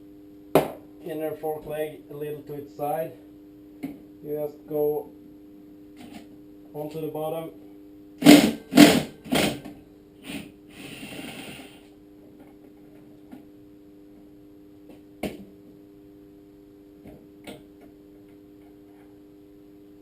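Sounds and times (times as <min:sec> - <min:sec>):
impact wrench bursts: 0:08.2 - 0:09.6.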